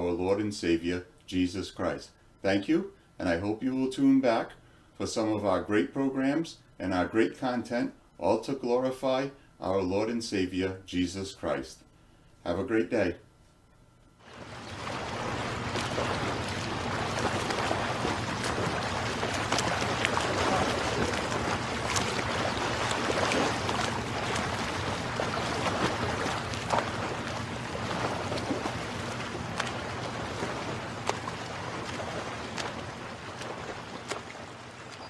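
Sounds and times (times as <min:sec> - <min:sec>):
low steady hum: 0:00.0 - 0:35.0
rushing water with splashes: 0:14.3 - 0:35.0.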